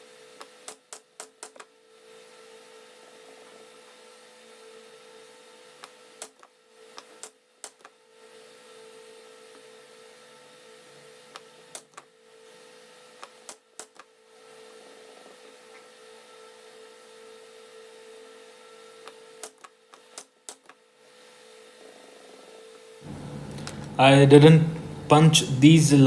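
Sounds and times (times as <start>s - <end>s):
steady hum: 23.0s - 26.0s.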